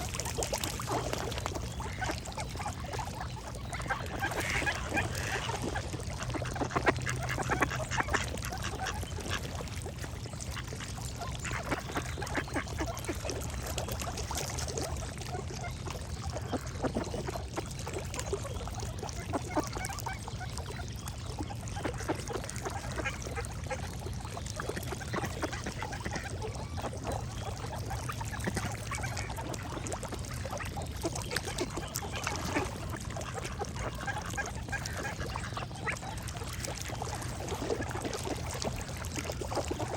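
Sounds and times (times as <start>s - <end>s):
ducks quacking: 0.8s - 9.6s, 24.6s - 38.9s.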